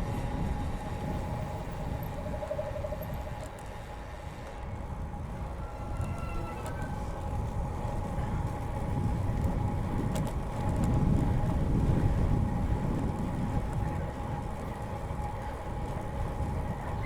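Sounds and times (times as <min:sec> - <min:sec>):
bicycle tyre rumble: 0:00.0 - 0:17.0
wind buffeting microphone: 0:00.0 - 0:17.0
thin steady hum: 0:00.7 - 0:07.4.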